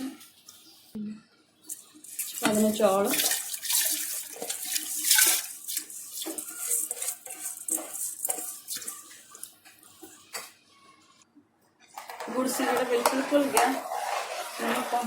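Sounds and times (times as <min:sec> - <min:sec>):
rice splashing into milk: 0:01.7 - 0:09.8
metal spoon scraping a pot: 0:01.7 - 0:10.2, 0:12.0 - 0:15.0.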